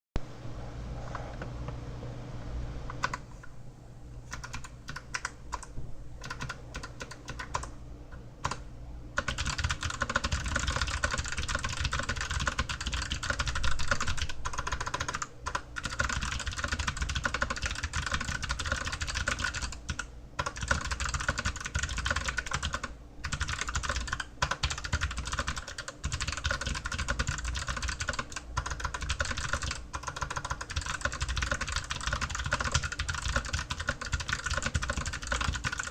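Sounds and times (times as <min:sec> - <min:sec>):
clicky mechanical keyboard typing: 0:02.9 - 0:03.3, 0:04.3 - 0:08.6, 0:09.2 - 0:35.9.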